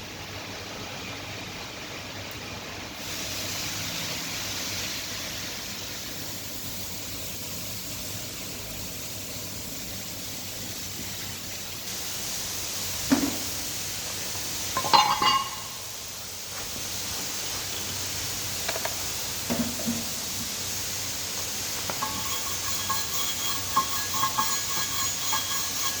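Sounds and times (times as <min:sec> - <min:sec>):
steady hiss: 0:00.0 - 0:26.0
metal clanking on metal: 0:14.8 - 0:15.8, 0:21.9 - 0:26.0.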